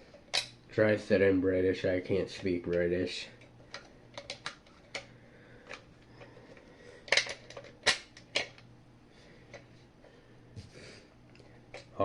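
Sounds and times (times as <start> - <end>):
clicks and knocks of handled parts: 0.1 - 0.6, 3.4 - 8.7, 11.3 - 12.0.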